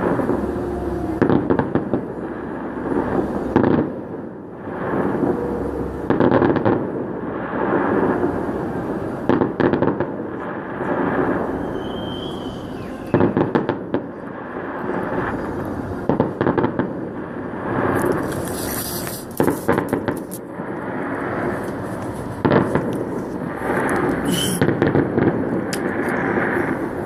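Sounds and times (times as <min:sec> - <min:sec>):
hissing crackle: 0:00.0 - 0:27.0
firework shell bursts booming: 0:09.2 - 0:15.4, 0:19.3 - 0:21.6, 0:22.3 - 0:27.0
sharp crackling reports: 0:17.3 - 0:27.0.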